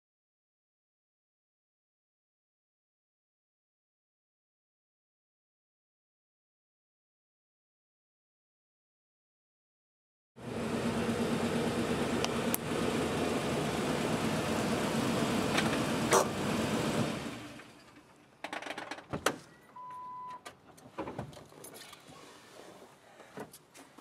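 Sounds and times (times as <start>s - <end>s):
car running close by: 10.4s - 17.7s
short steady beep: 19.5s - 20.4s.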